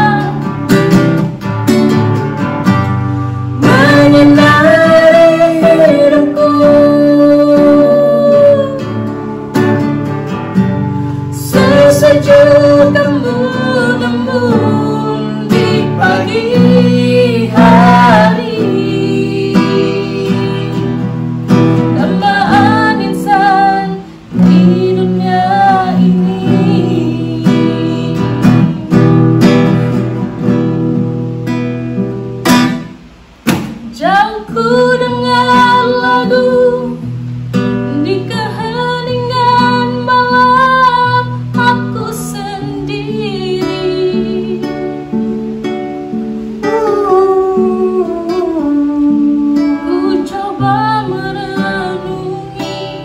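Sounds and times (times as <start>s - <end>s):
person singing: 0.0s - 0.9s, 3.3s - 9.1s, 11.1s - 30.0s, 33.8s - 37.1s, 37.9s - 45.3s, 46.4s - 53.0s
plucked acoustic guitar: 0.0s - 53.0s.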